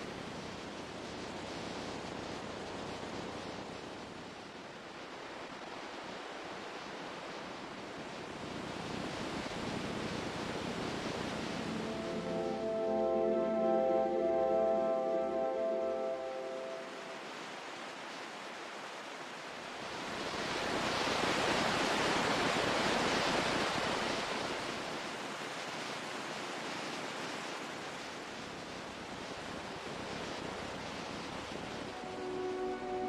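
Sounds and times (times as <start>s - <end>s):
wave breaking and washing in: 4.8s - 27.9s, 29.8s - 33.0s
soft music: 11.4s - 17.4s, 31.9s - 33.0s.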